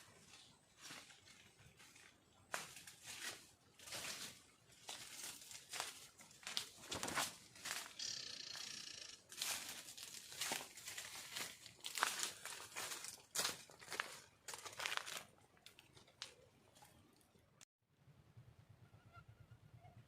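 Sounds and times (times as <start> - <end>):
buzzy sound: 7.9 - 9.2
dry material crinkling: 9.4 - 17.4.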